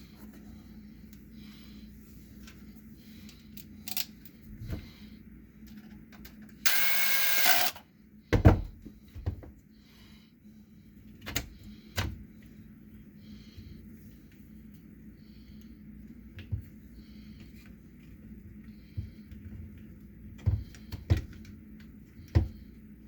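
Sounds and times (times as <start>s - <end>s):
drill parts being handled: 6.7s - 7.8s.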